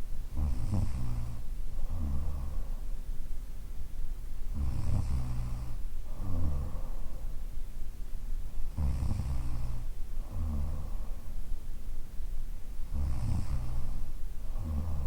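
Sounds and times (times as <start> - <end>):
woman snoring: 0.4 - 2.7, 4.6 - 7.0, 8.7 - 11.1, 12.9 - 15.0.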